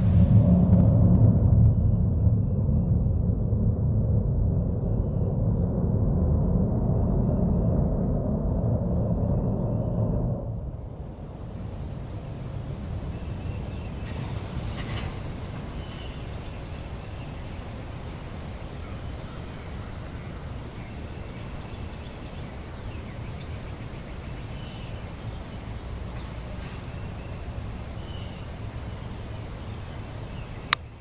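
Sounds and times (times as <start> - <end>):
deep distant rumble: 0.0 - 31.0
faint bird chirps: 11.6 - 31.0.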